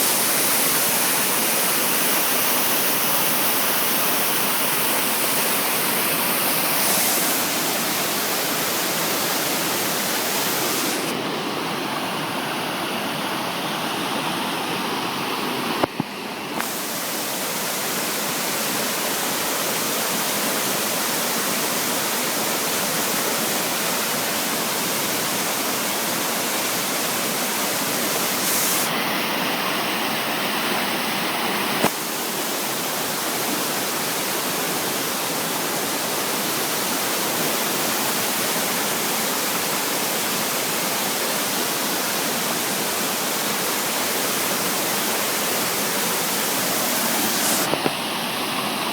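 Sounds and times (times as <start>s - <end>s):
waterfall pouring: 0.0s - 11.1s.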